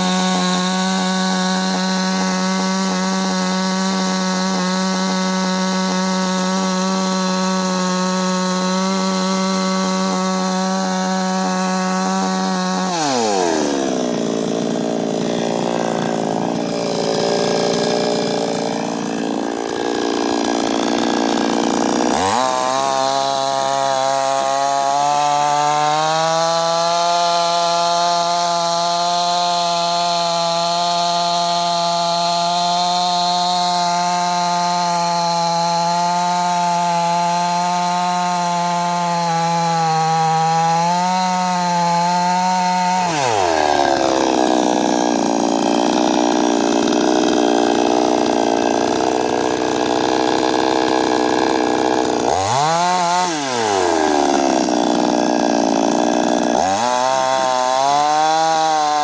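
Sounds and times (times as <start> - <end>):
chainsaw engine revving: 0.0 - 59.0.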